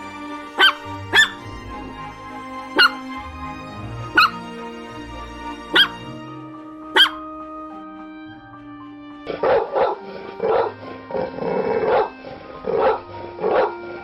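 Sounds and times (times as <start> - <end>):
background music: 0.0 - 14.0
dog barking: 0.6 - 1.4, 2.8 - 3.0, 4.1 - 4.4, 5.7 - 6.1, 6.9 - 7.3.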